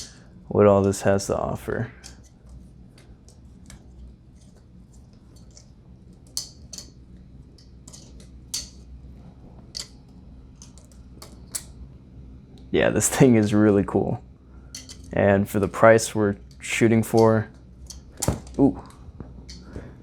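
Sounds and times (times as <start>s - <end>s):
knife handles clicking together: 6.3s - 7.0s, 7.6s - 8.8s, 9.8s - 10.0s, 14.8s - 15.8s.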